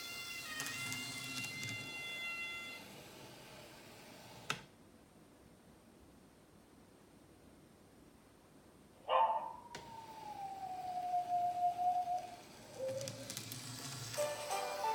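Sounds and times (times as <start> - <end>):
long wailing call sliding down: 9.7 - 14.9.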